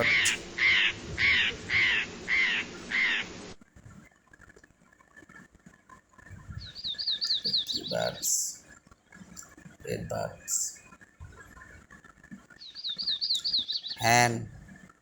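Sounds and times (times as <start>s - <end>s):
parrot squawking: 0.0s - 3.3s
small bird high chirps: 6.6s - 8.2s, 12.6s - 14.0s.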